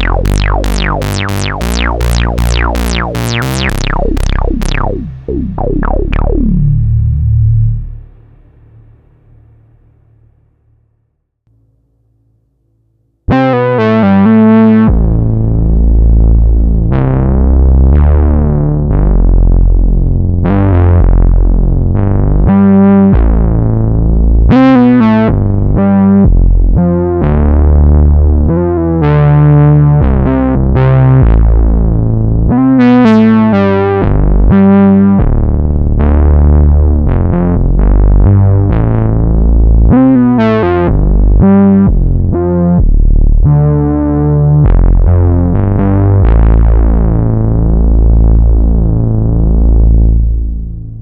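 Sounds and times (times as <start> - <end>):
warbling synthesizer part: 0.0 - 8.6
synthesizer bass notes: 0.0 - 10.1, 13.3 - 51.0.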